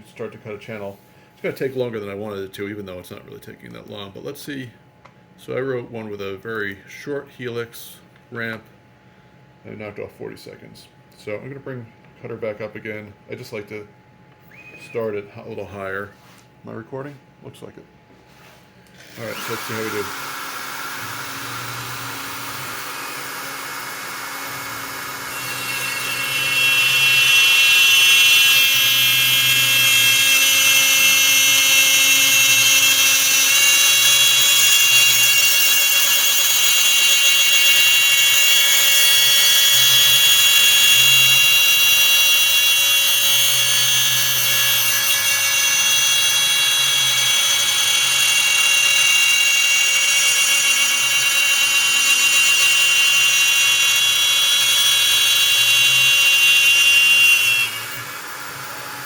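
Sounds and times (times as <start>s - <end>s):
router spindle high whine: 14.4s - 15.9s, 19.0s - 59.0s.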